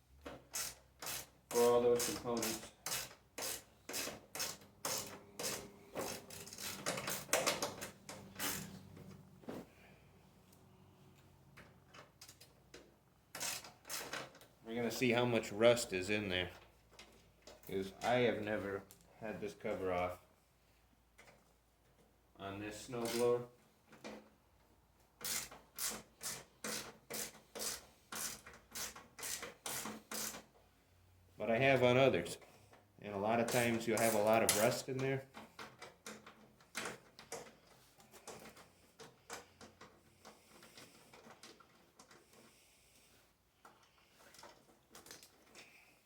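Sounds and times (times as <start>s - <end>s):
ratchet wrench rasping: 0.5s - 8.8s, 13.3s - 14.2s, 25.2s - 30.4s.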